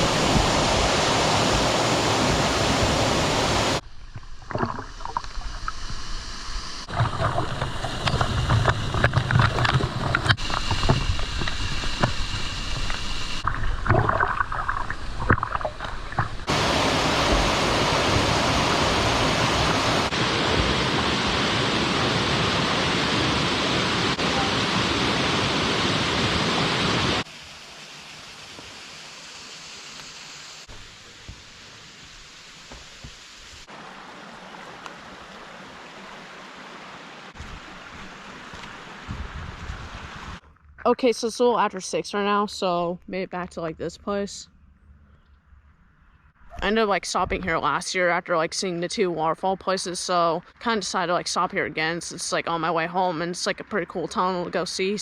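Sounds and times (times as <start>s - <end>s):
waterfall rushing water: 0.0s - 3.8s, 16.5s - 39.1s
knocks and crackles: 6.9s - 16.5s.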